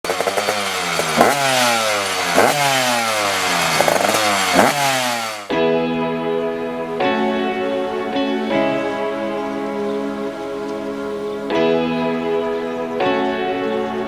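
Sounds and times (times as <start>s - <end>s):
motorcycle engine revving: 0.0s - 5.6s
music: 5.5s - 14.0s.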